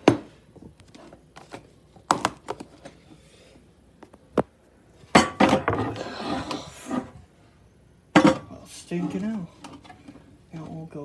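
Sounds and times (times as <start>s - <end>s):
bowls knocking and clattering: 5.2s - 7.2s.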